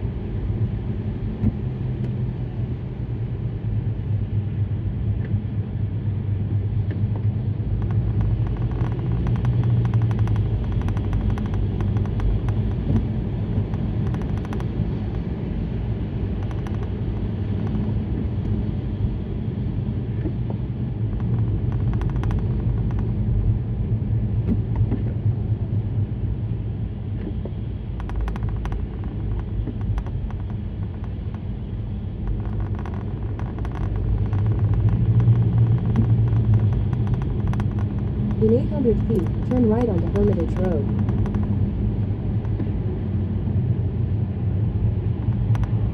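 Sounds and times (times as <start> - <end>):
car interior road noise: 0.0 - 45.9
faint ticks: 7.8 - 15.3, 21.2 - 23.1, 32.2 - 41.6, 45.2 - 45.9.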